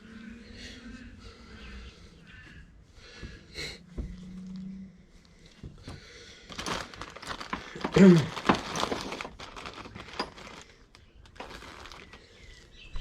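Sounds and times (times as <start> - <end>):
dense rustling and crinkling: 5.5 - 13.0
faint bird chirps: 12.0 - 13.0.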